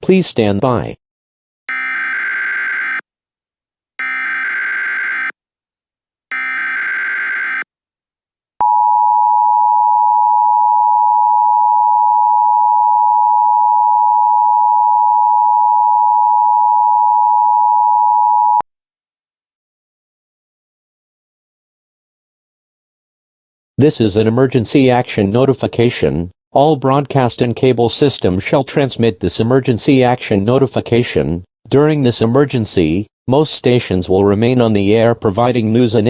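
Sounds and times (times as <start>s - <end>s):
shrill warbling data bursts: 1.7s - 3.0s, 4.0s - 5.3s, 6.3s - 7.6s
two-tone attention signal: 1.7s - 3.0s, 4.0s - 5.3s, 6.3s - 7.6s.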